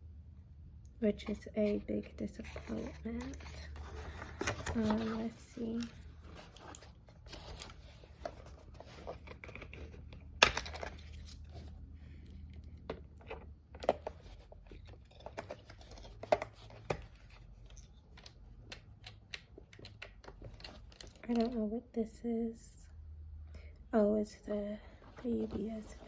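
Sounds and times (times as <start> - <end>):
plastic parts clicking: 12.9 - 21.6.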